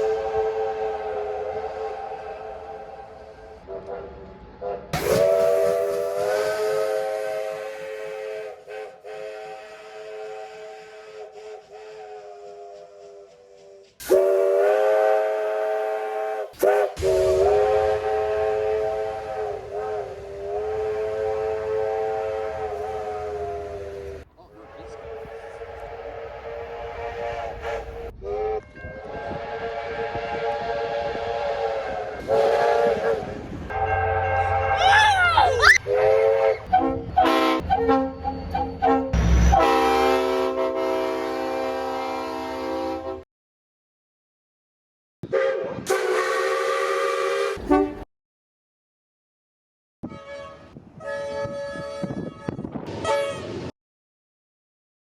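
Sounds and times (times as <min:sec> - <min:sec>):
train horn blasts: 0:00.0 - 0:13.3, 0:14.0 - 0:24.2, 0:25.0 - 0:35.1, 0:35.8 - 0:38.1, 0:38.8 - 0:43.2, 0:45.3 - 0:48.0, 0:50.0 - 0:53.7
train chime whistle: 0:34.2 - 0:35.8.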